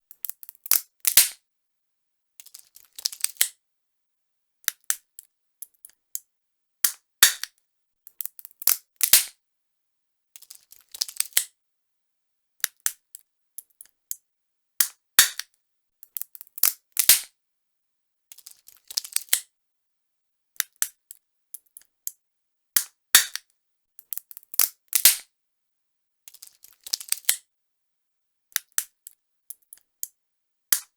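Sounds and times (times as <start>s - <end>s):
nutcracker cracking nuts: 0.1s - 1.4s, 2.4s - 3.5s, 8.1s - 9.3s, 10.4s - 11.5s, 16.0s - 17.3s, 18.3s - 19.4s, 24.0s - 25.2s, 26.3s - 27.4s.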